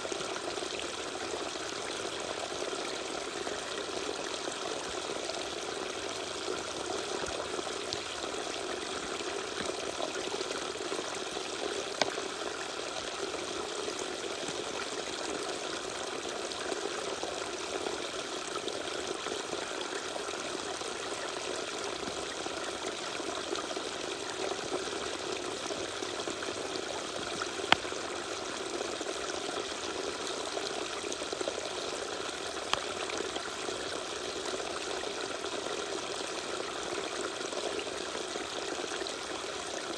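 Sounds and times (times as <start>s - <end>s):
water dripping clicks: 11.9s - 12.2s, 27.5s - 28.0s, 32.6s - 33.0s.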